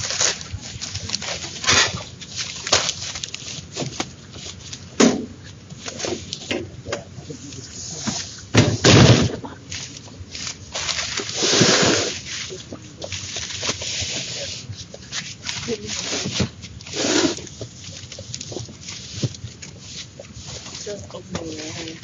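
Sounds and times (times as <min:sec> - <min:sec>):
heavy thump: 0:08.5 - 0:09.5
generator knocks and clatters: 0:08.5 - 0:09.6.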